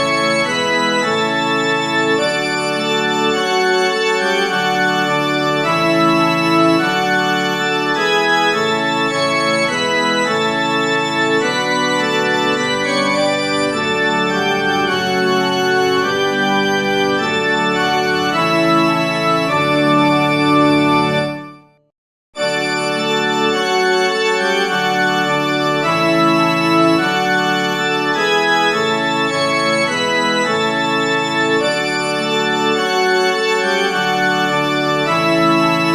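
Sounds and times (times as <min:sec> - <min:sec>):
organ playing a hymn: 0:00.0 - 0:21.6, 0:22.4 - 0:35.9.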